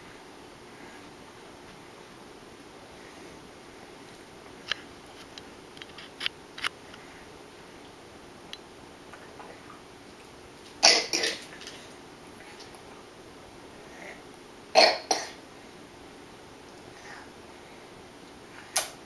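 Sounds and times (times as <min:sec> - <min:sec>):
toddler coughing: 0:10.8 - 0:11.4, 0:14.8 - 0:15.4.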